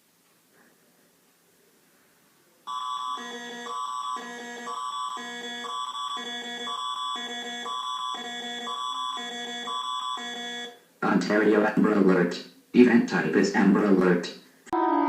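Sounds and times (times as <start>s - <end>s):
emergency alert attention tone: 2.7s - 10.8s, 14.7s - 15.0s.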